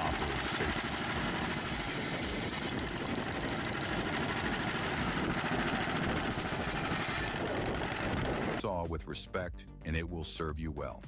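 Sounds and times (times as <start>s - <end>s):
engine-driven saw running: 0.0s - 8.6s.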